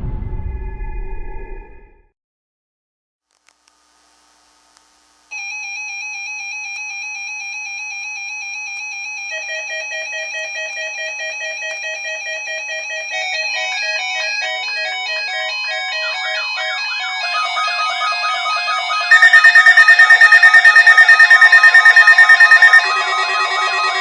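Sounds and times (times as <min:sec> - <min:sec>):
warbling buzzy alarm beeps: 0:19.1 - 0:24.0.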